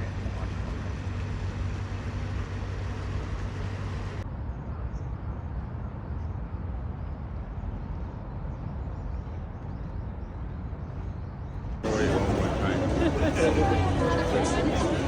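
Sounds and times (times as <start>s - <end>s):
low vehicle rumble: 0.0s - 4.6s, 10.9s - 15.0s.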